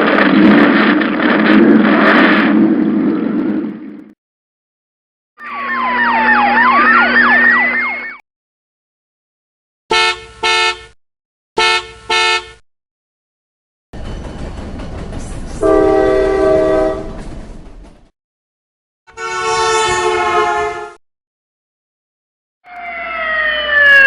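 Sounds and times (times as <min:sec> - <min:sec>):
car horn beeps: 0:09.9 - 0:11.0, 0:11.6 - 0:12.6, 0:19.1 - 0:21.0
long horn blast: 0:09.9 - 0:11.0, 0:11.6 - 0:12.6, 0:15.6 - 0:17.2, 0:19.1 - 0:21.0.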